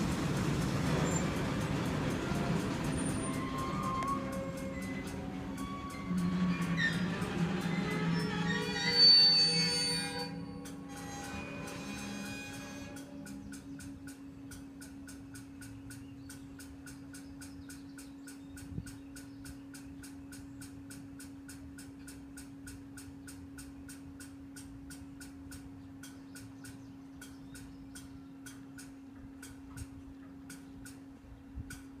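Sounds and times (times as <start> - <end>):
crossing bell ringing: 1.2 - 6.3.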